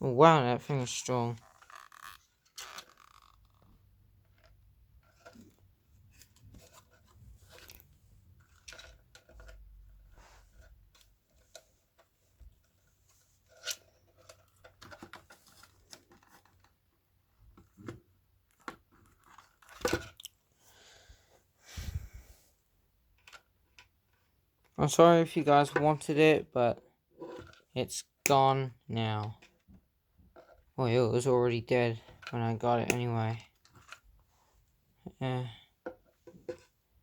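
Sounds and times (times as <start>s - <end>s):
clicks and rustling of handled parts: 1.4s - 16.8s, 23.2s - 24.8s, 32.0s - 34.1s.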